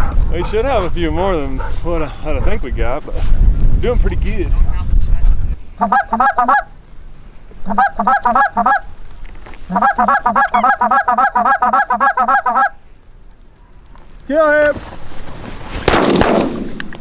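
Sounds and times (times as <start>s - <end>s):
goose call honks and clucks: 5.8s - 6.8s, 7.6s - 8.9s, 9.7s - 12.8s.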